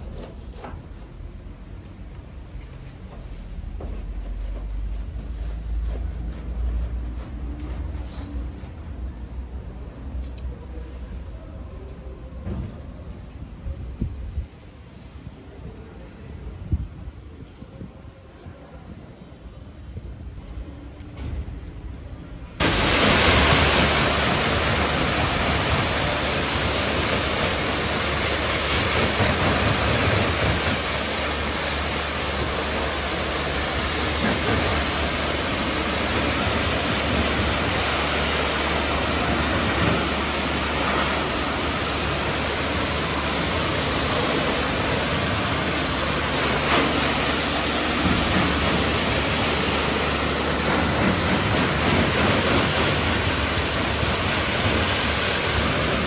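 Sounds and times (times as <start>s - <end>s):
pressure washer spraying water: 22.6s - 56.0s.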